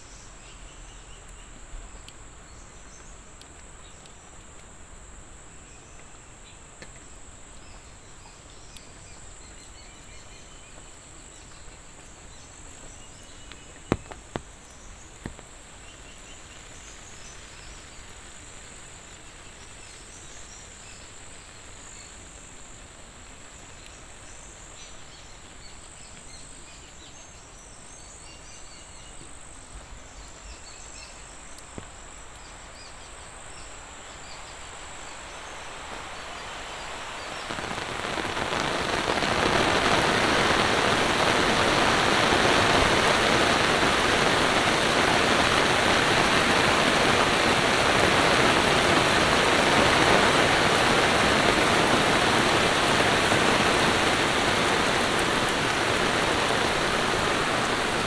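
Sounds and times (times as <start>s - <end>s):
heavy rain downpour: 0.0s - 58.0s
water drips: 6.8s - 17.7s.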